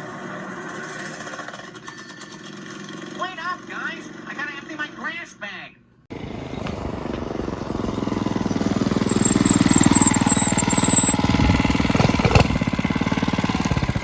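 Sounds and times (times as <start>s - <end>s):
small engine running: 0.0s - 3.2s, 6.1s - 14.0s.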